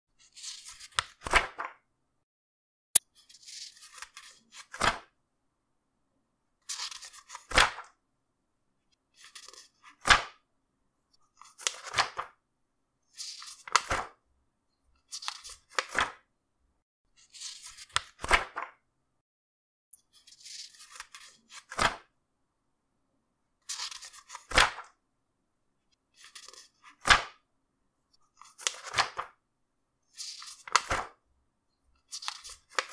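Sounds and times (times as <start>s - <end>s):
paper pages turning: 0.2s - 1.8s, 3.2s - 5.0s, 6.6s - 7.9s, 9.1s - 10.3s, 11.4s - 12.3s, 13.1s - 14.2s, 15.1s - 16.2s, 17.2s - 18.8s, 20.1s - 22.0s, 23.6s - 24.9s, 26.1s - 27.3s, 28.3s - 29.3s, 30.1s - 31.2s, 32.0s - 32.9s.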